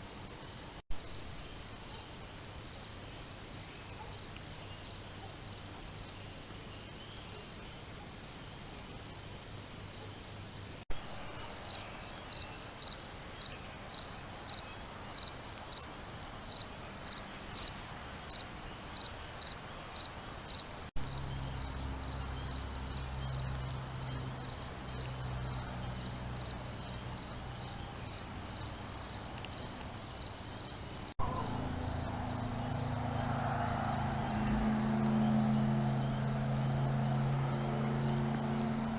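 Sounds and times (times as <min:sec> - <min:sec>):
cricket chirping: 0:00.0 - 0:38.9
low steady hum: 0:31.2 - 0:38.9.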